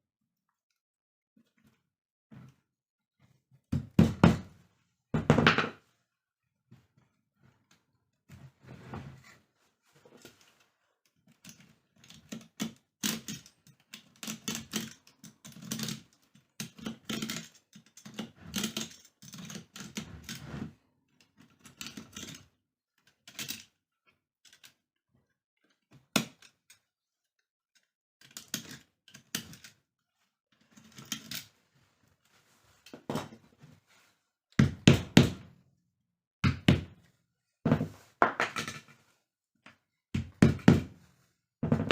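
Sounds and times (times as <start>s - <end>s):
knocking and tapping on rattan: 41.6s - 41.9s.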